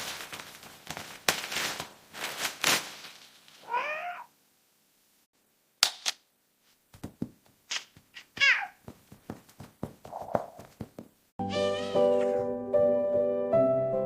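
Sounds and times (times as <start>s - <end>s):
kitten meowing: 3.6s - 4.3s, 11.5s - 12.4s.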